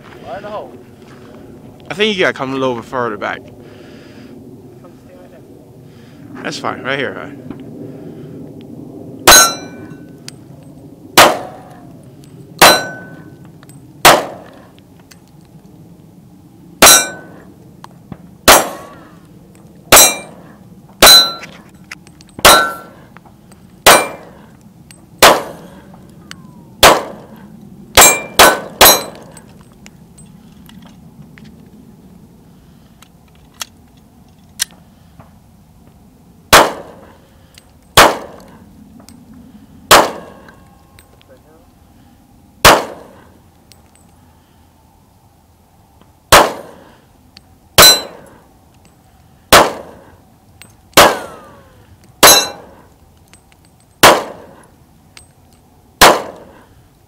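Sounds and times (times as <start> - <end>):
pistol shots: 9.2 - 9.8, 11.2 - 11.7, 12.6 - 13.2, 14.0 - 14.5, 16.8 - 17.4, 18.4 - 19.0, 19.9 - 20.4, 21.0 - 21.5, 22.4 - 23.0, 23.8 - 24.4, 25.2 - 25.8, 26.8 - 27.3, 28.0 - 29.4, 36.5 - 37.0, 38.0 - 38.5, 39.9 - 40.5, 42.6 - 43.2, 46.3 - 46.8, 47.8 - 48.3, 49.5 - 50.0, 51.0 - 51.6, 52.2 - 52.8, 54.0 - 54.6, 56.0 - 56.6
metallic ring of steel target: 9.2 - 10.1, 12.6 - 13.3, 16.8 - 17.4, 18.5 - 19.0, 19.9 - 20.4, 21.0 - 21.5, 22.2 - 23.0, 23.8 - 24.4, 28.0 - 29.4, 47.8 - 48.4, 51.0 - 51.6, 52.2 - 52.8.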